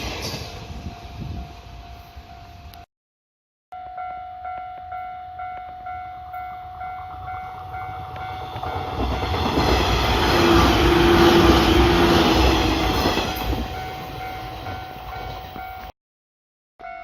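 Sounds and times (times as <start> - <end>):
train approaching rumble: 4.5 - 15.9.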